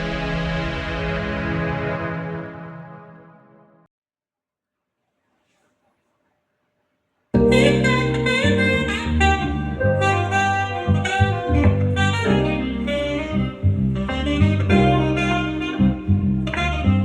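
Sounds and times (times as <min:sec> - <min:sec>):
jazz backing band: 0:07.4 - 0:17.0
saxophone melody: 0:07.4 - 0:17.0.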